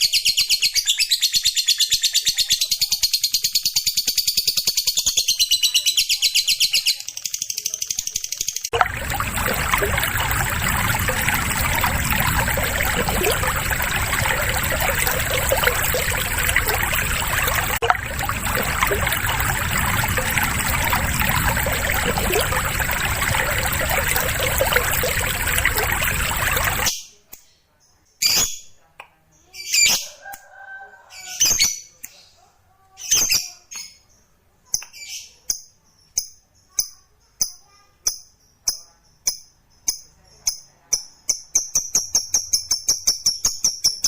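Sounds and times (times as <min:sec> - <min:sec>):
running water: 0:08.7 - 0:26.9.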